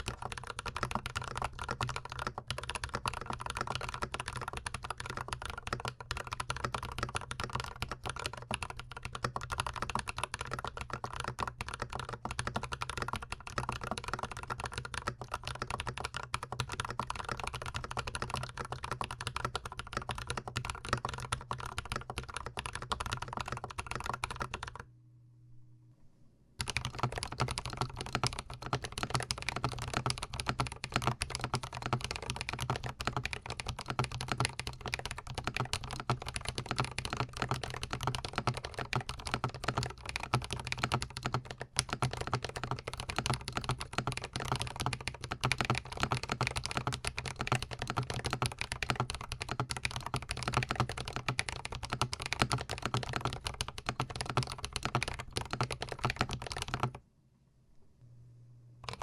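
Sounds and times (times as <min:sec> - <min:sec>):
fast typing on mechanical keyboard: 0:00.0 - 0:24.8, 0:26.6 - 0:57.0.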